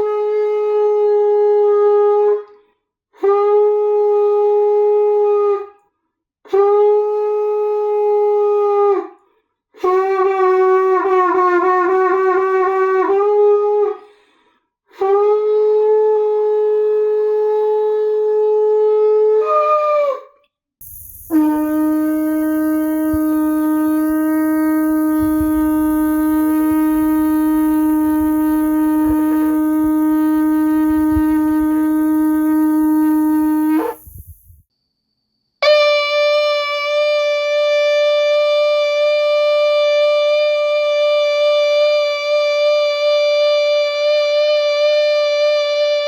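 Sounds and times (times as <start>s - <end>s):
shofar blast: 20.8s - 34.6s, 35.6s - 46.0s.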